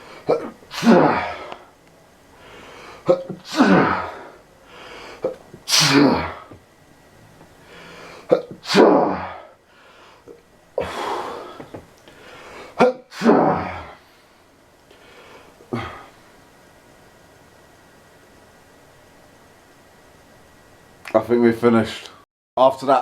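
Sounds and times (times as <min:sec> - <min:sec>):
person sneezing: 0:00.1 - 0:01.6, 0:03.0 - 0:04.3, 0:05.2 - 0:06.6, 0:08.2 - 0:09.5, 0:12.8 - 0:14.0
gasping in-breaths: 0:07.6 - 0:08.3, 0:09.2 - 0:12.8.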